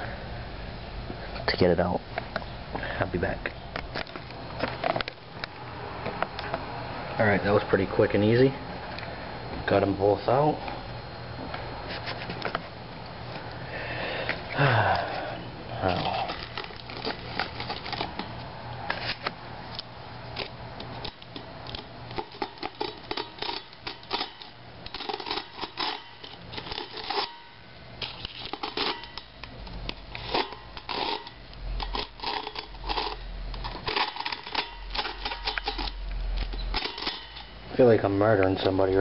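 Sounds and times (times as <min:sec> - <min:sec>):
scraping tearing and cracking: 0:15.8 - 0:19.2, 0:28.0 - 0:37.5.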